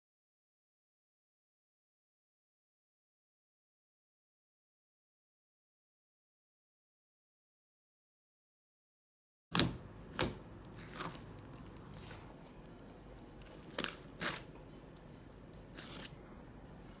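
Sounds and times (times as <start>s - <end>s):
slime squished by hand: 10.1s - 14.6s, 15.5s - 16.2s.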